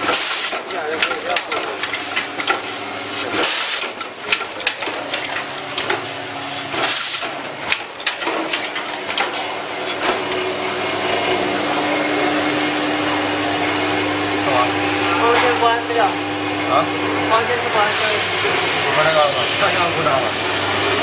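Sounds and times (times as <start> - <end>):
machine clicks and clatter: 0.0 - 6.1, 6.7 - 10.4
machine whirring: 0.0 - 21.0.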